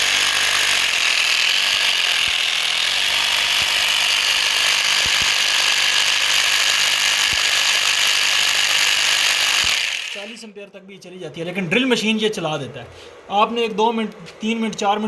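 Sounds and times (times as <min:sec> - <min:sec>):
electric drill running: 0:00.0 - 0:10.4.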